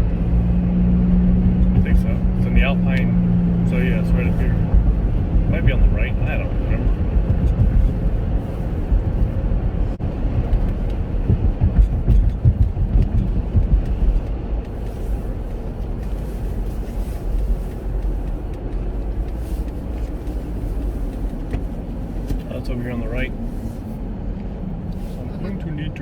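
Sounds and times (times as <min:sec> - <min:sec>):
car road and engine rumble: 0:00.0 - 0:26.0.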